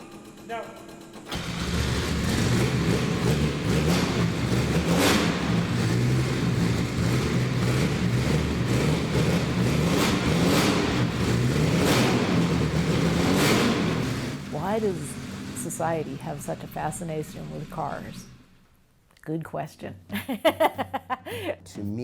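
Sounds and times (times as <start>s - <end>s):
car engine revving: 1.1s - 18.6s.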